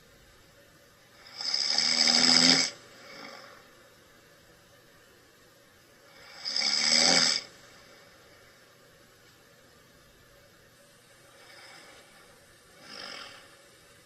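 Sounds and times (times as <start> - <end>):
person snoring: 1.2 - 3.7, 6.1 - 8.0, 11.3 - 13.8
faint breath: 11.2 - 14.0.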